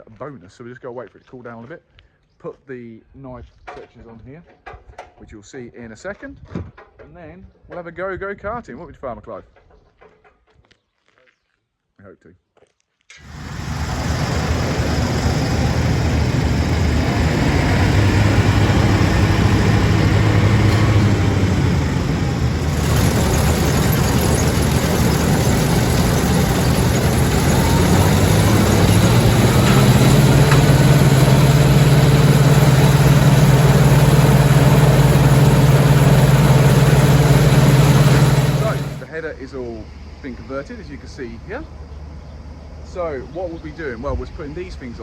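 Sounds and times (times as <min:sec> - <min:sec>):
diesel engine running: 0:13.2 - 0:39.1.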